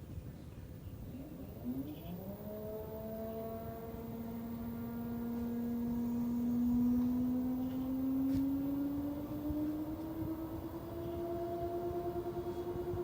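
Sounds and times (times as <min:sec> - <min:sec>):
washing machine drum motor whining: 0:04.2 - 0:13.0.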